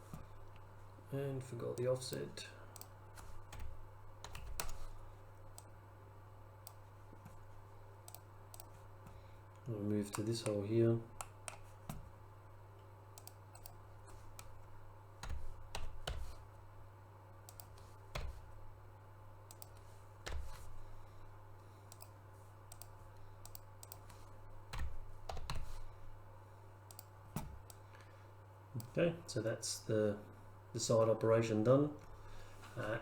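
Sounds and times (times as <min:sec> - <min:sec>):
low electrical hum: 0:00.0 - 0:33.0
keyboard typing: 0:01.8 - 0:05.7, 0:06.6 - 0:09.2, 0:10.0 - 0:12.1, 0:13.2 - 0:16.5, 0:17.4 - 0:18.6, 0:19.4 - 0:20.8, 0:21.9 - 0:25.9
mouse clicks: 0:13.2 - 0:13.8, 0:19.5 - 0:19.8, 0:26.9 - 0:27.8.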